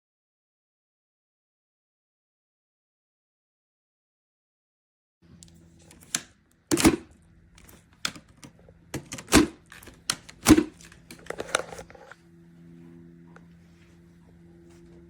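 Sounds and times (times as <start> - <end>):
faint steady hum: 5.2 - 15.0.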